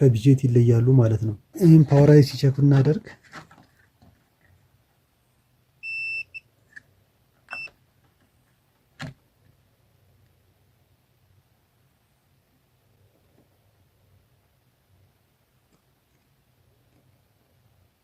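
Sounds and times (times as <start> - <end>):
multimeter beeping: 5.8 - 6.5, 7.5 - 7.8.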